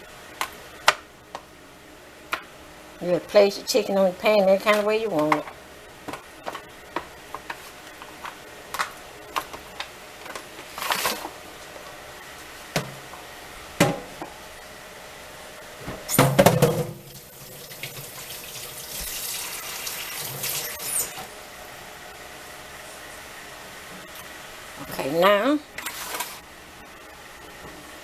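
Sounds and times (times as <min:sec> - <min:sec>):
kitchen tap running: 0:16.1 - 0:21.3.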